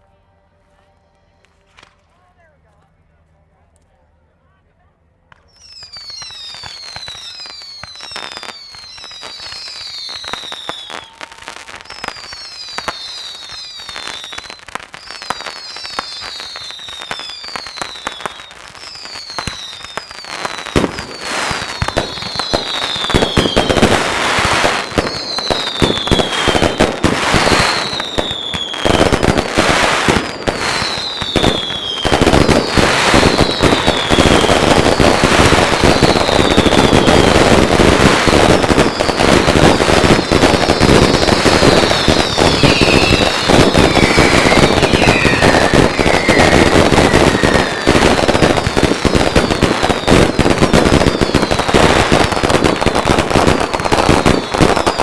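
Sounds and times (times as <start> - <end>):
firework crackles and pops: 1.4 - 2.1, 5.3 - 55.0
firework whistles falling in pitch: 5.5 - 55.0
heavy firework bangs: 6.2 - 55.0.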